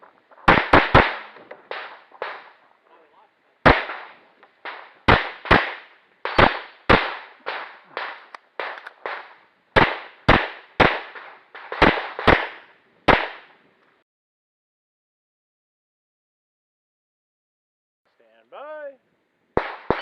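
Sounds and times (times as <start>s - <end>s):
pistol shots: 0.4s - 2.6s, 3.6s - 13.6s, 19.6s - 20.0s.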